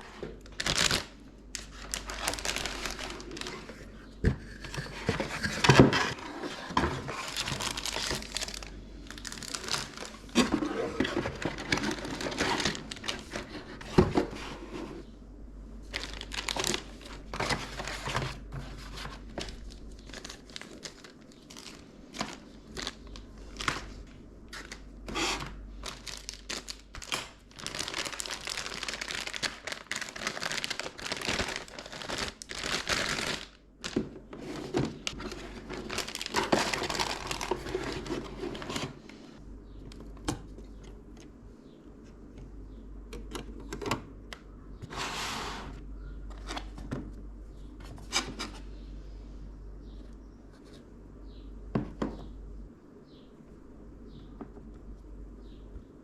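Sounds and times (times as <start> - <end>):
packaging wrap crinkling: 0.4 - 3.9, 4.5 - 13.8, 15.8 - 39.0.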